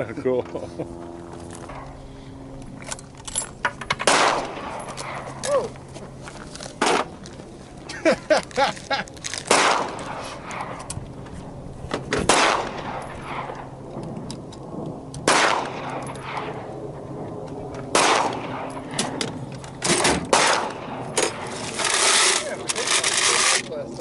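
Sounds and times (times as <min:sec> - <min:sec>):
gunshots with echo: 0:04.0 - 0:04.8, 0:09.5 - 0:10.2, 0:12.3 - 0:13.5, 0:15.2 - 0:16.6, 0:17.9 - 0:18.7, 0:20.1 - 0:21.0.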